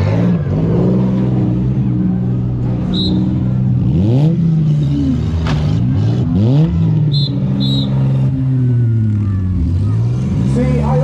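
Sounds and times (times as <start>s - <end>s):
car engines revving: 0.0s - 11.0s.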